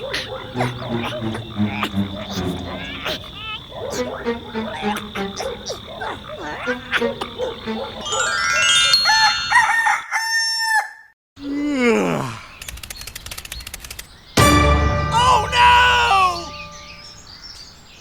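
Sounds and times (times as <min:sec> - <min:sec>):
short croaking calls: 0:00.0 - 0:08.8
rooster crowing: 0:06.6 - 0:11.1
rapid clicks: 0:12.6 - 0:14.1.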